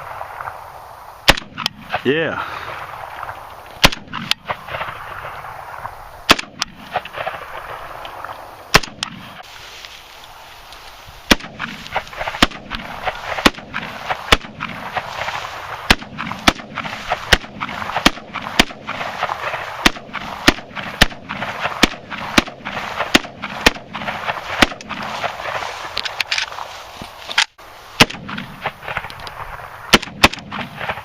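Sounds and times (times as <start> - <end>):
pistol gunshots with echo: 1.2 - 2.3, 3.8 - 5.6, 6.3 - 7.7, 8.7 - 9.2, 11.3 - 25.6, 28.0 - 29.0, 29.9 - 31.0.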